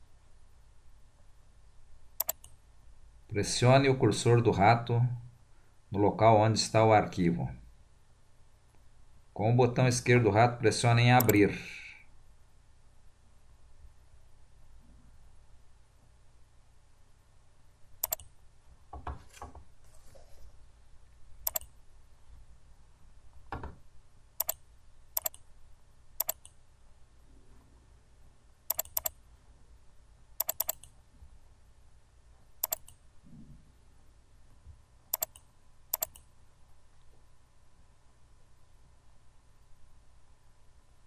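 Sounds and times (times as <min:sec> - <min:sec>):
mouse button clicks: 0:02.2 - 0:02.6, 0:11.2 - 0:11.4, 0:18.0 - 0:18.3, 0:21.5 - 0:21.7, 0:24.4 - 0:24.6, 0:25.2 - 0:25.4, 0:26.2 - 0:26.6, 0:28.7 - 0:29.2, 0:30.4 - 0:30.9, 0:32.6 - 0:33.0, 0:35.1 - 0:36.2.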